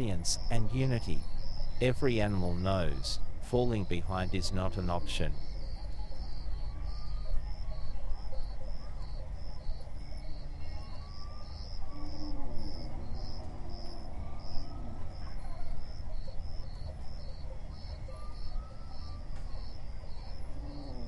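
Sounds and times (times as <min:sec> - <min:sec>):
crickets chirping: 0:00.0 - 0:21.0
low falling animal calls: 0:17.5 - 0:21.0.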